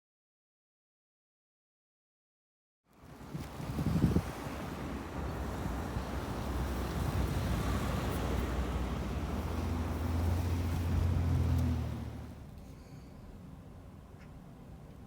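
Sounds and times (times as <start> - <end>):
wind on microphone: 3.2 - 9.5
vehicle engine rumbling: 3.6 - 13.7.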